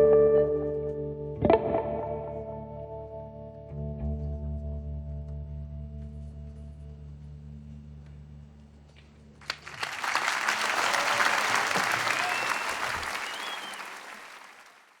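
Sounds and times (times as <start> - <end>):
audience applause: 9.4 - 15.0.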